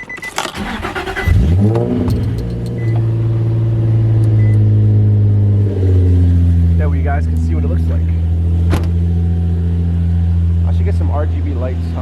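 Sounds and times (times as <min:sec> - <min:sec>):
short beeps: 0:00.0 - 0:00.4
car engine starting and idling: 0:00.0 - 0:11.9.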